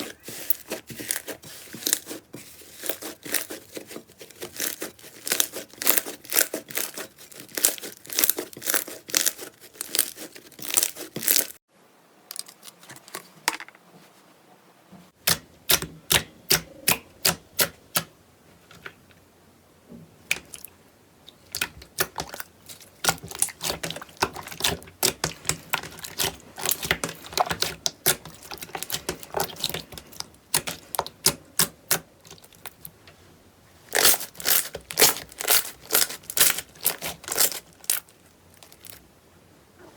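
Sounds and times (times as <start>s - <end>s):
slime crackling and popping: 4.5s - 11.6s, 21.4s - 32.9s, 33.9s - 39.0s.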